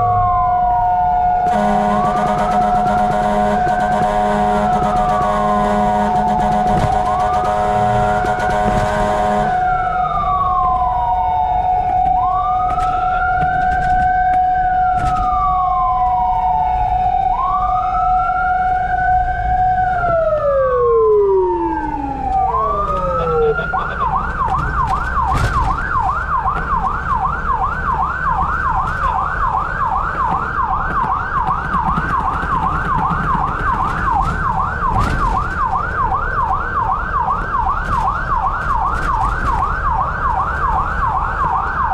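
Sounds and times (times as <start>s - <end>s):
fire truck siren wailing: 0.0s - 41.9s
siren yelp: 0.0s - 41.9s
fire truck horn blast: 1.4s - 9.9s.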